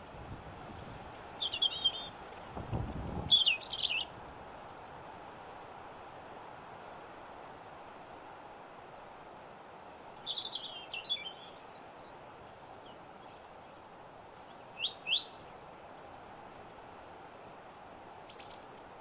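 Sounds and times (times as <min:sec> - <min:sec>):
steady background hiss: 0:00.0 - 0:19.0
small songbirds chirping: 0:00.8 - 0:04.2, 0:09.5 - 0:13.8, 0:14.4 - 0:15.5, 0:18.3 - 0:19.0.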